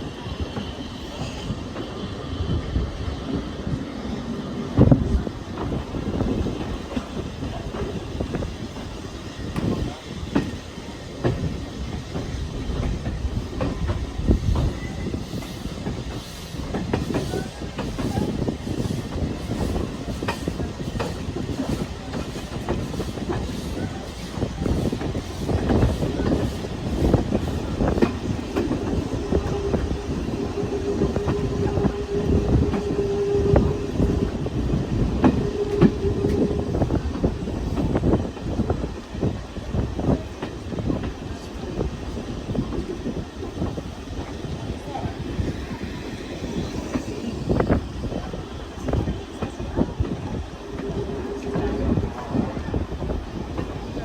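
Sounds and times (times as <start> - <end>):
steam train rumbling on track: 0.0 - 54.0
steady high tone: 44.7 - 48.5.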